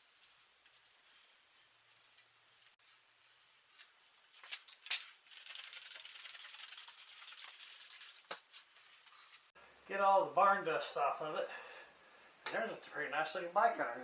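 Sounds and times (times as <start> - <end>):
cloth rubbing on bicycle frame: 0.0 - 9.5.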